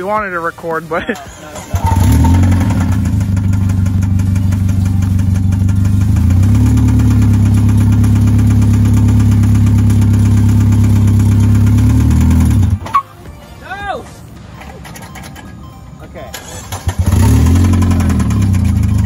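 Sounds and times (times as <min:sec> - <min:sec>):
car engine running loudly: 0:01.7 - 0:12.8, 0:16.4 - 0:19.0
rapid engine knocking: 0:01.8 - 0:12.8, 0:16.5 - 0:19.0.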